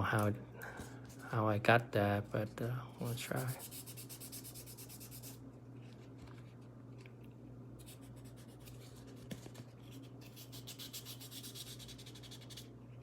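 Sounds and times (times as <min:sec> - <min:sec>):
sandpaper scratching metal: 0:03.2 - 0:05.4, 0:10.2 - 0:12.7.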